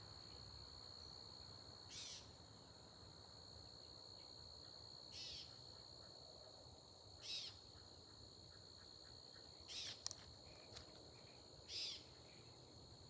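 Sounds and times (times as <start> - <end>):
short insect call: 1.9 - 2.4, 5.1 - 6.0, 7.2 - 7.6, 11.0 - 12.6.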